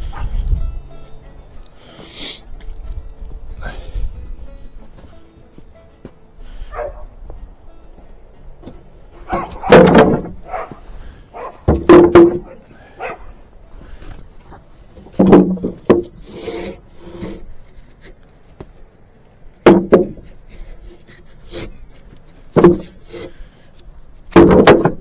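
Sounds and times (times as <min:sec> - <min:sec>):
heavy wooden knocks: 0:08.6 - 0:10.9, 0:11.6 - 0:12.6, 0:15.1 - 0:16.2, 0:19.6 - 0:20.3, 0:22.5 - 0:23.0, 0:24.3 - 0:25.0
wood scraping on wood: 0:13.9 - 0:18.9, 0:19.7 - 0:25.0.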